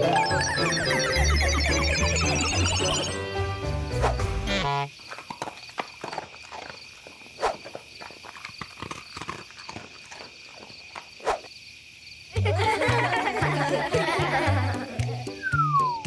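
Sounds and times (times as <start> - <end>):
downward-sliding cartoon calls: 0.0 - 3.2
background music: 0.0 - 4.7, 12.4 - 16.0.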